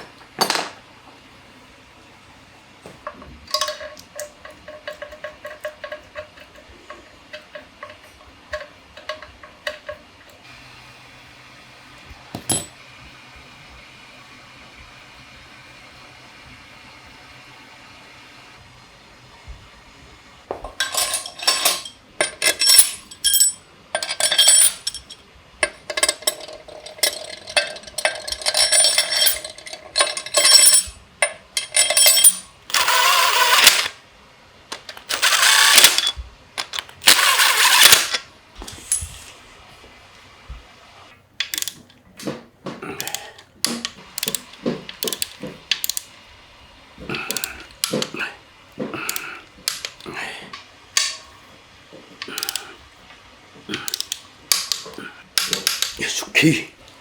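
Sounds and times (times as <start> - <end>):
metal hand tools clinking: 20.8 - 33.9, 34.9 - 39.2, 43.0 - 46.0, 52.2 - 52.6, 53.8 - 56.5
air hissing: 38.6 - 39.6.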